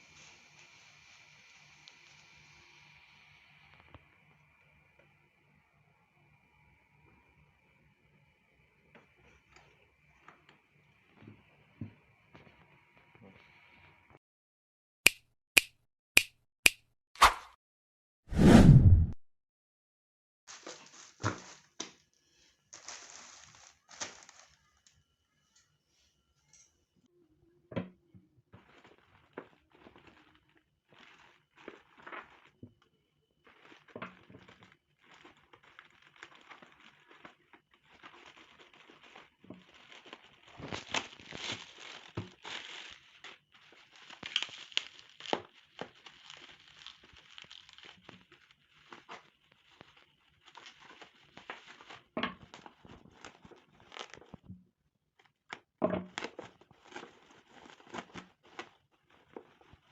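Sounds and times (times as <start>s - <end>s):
packaging crinkling and tearing: 20.5s - 24.9s, 28.6s - 54.5s, 55.2s - 59.9s.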